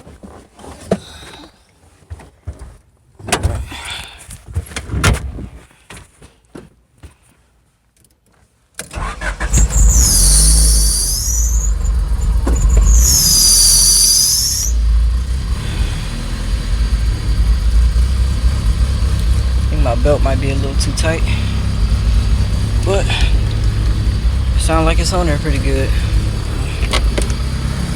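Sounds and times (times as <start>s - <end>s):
car engine starting and rumbling: 8.8s - 27.9s
accessory belt squealing: 9.0s - 14.9s.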